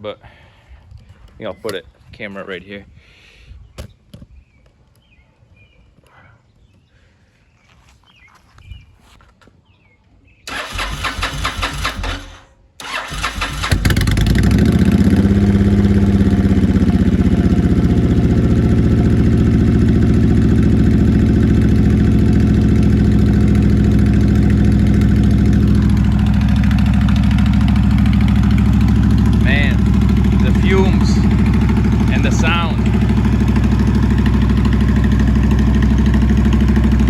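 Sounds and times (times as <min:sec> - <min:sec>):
electric starter cranking: 0:10.5 - 0:14.6
motorcycle engine idling: 0:10.5 - 0:37.0.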